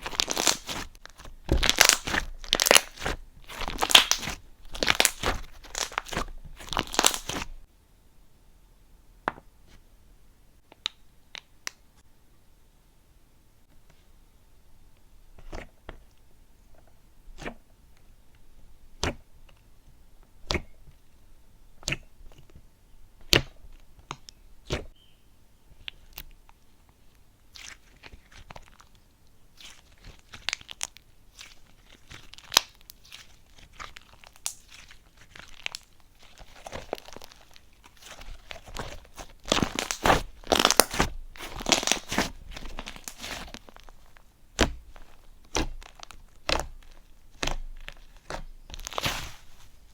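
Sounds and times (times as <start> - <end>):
slime popping: 0.0 - 7.5, 29.6 - 49.6
slime crackling and crunching: 0.0 - 7.6, 27.5 - 49.9.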